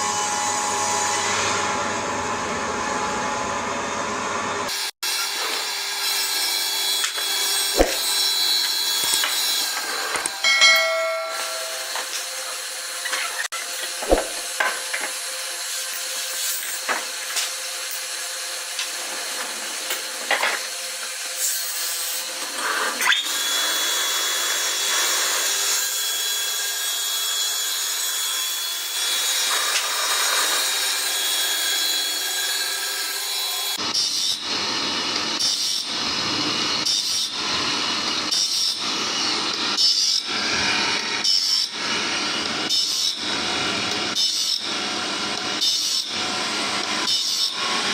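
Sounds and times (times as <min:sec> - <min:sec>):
saw blade cutting log: 0:05.1 - 0:17.7
sharp knocks: 0:07.8 - 0:08.2, 0:14.0 - 0:14.6.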